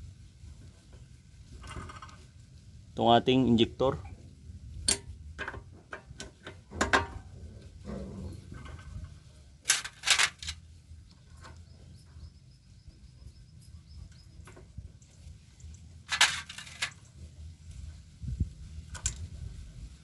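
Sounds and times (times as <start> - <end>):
metal tools clinking: 9.7 - 10.6, 15.6 - 17.1.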